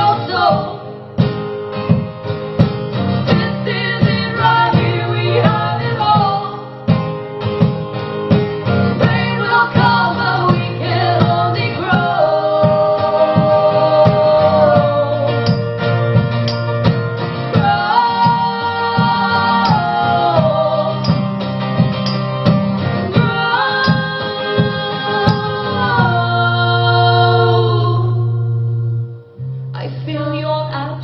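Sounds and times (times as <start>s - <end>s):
strummed guitar: 0.0s - 29.8s
voices singing held notes: 9.0s - 15.8s, 17.4s - 21.5s, 22.9s - 28.1s.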